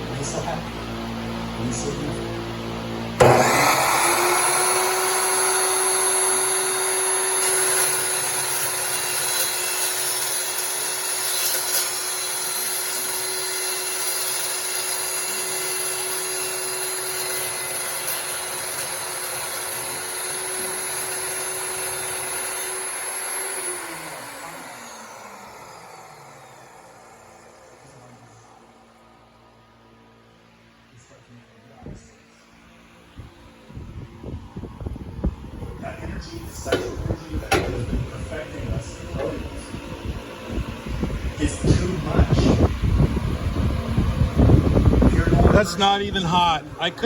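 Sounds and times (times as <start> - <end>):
chop saw cutting metal: 3.2 - 27.4, 36.4 - 39.8
saw blade winding down: 3.2 - 28.5, 36.2 - 43.0.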